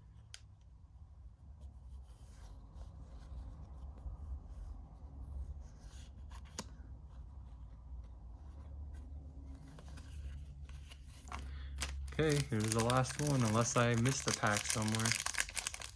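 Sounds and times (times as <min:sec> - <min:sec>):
rustling of cards and wrapper: 0:09.8 - 0:15.9.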